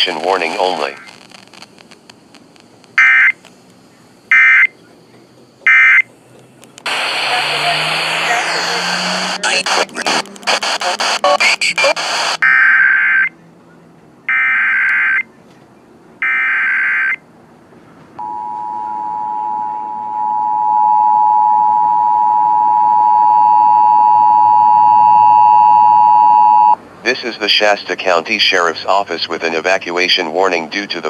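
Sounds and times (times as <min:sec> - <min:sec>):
rasping digital data bursts: 0:00.0 - 0:03.5, 0:06.9 - 0:13.3
two-tone attention signal: 0:18.2 - 0:26.8.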